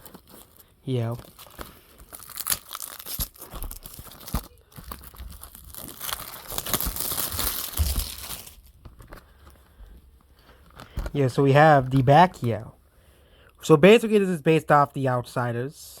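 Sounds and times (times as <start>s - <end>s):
plastic wrap tearing and crinkling: 0.0s - 9.2s.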